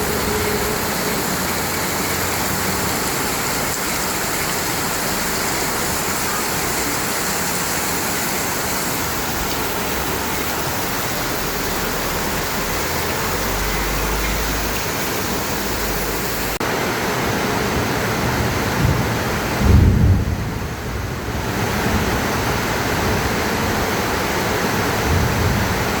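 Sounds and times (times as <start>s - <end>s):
heavy rain pouring: 0.0s - 26.0s.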